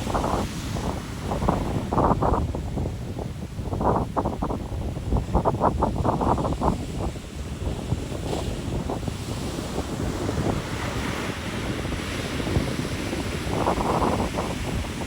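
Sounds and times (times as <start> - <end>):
ocean surf on beach: 0.0 - 15.0
wind buffeting microphone: 0.0 - 15.0.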